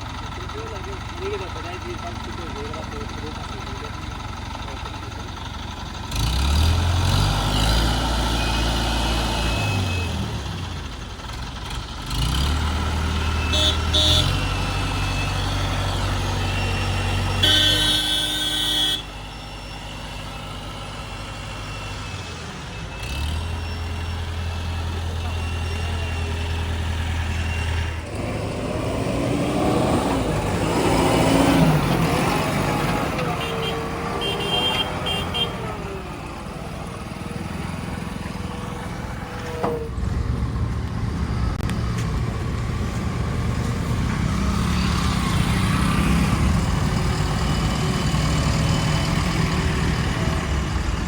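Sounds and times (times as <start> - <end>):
vehicle engine running: 0.0 - 8.0
diesel engine droning: 0.0 - 51.0.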